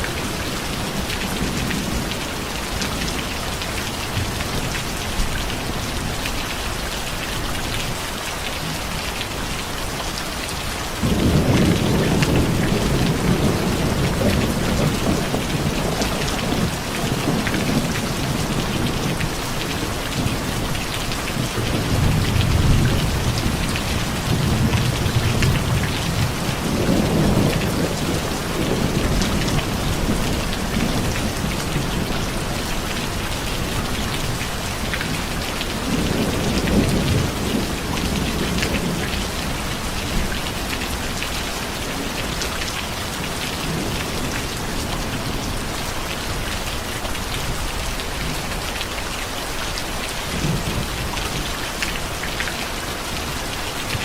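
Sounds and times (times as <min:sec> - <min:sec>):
steady rain falling: 0:00.0 - 0:54.0
low rumbles of thunder: 0:11.0 - 0:41.2.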